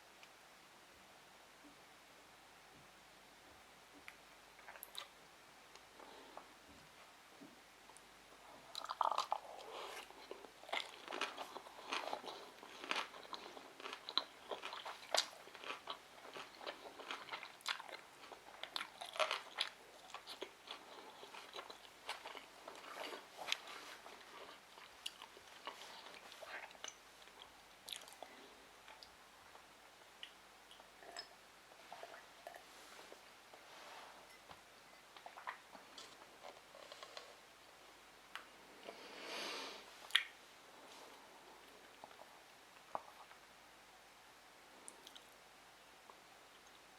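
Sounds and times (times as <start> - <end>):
person chewing food: 8.4 - 33.3, 35.1 - 37.4, 41.1 - 43.4.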